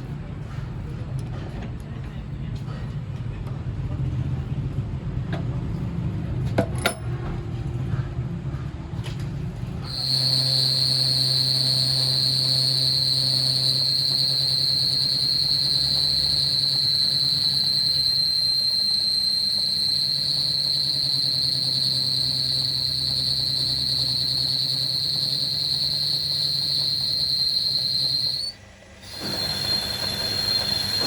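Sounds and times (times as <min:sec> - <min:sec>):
machinery low rumble: 0:07.2 - 0:31.0
machine high-pitched whine: 0:09.8 - 0:31.0.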